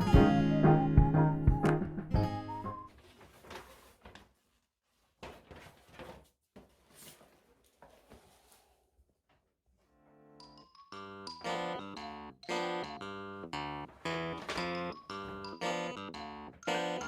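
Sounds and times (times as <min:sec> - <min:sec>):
guitar background music: 0:00.0 - 0:02.9, 0:11.0 - 0:17.0.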